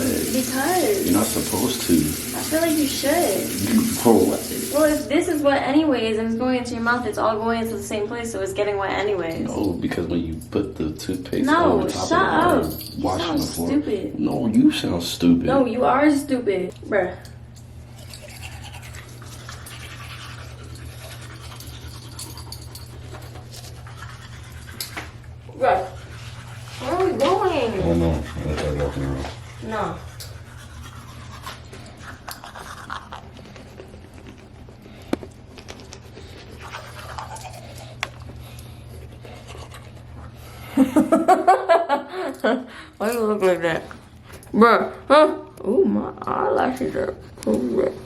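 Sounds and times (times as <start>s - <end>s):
toothbrush scrubbing teeth: 0.0s - 5.2s, 17.6s - 41.0s.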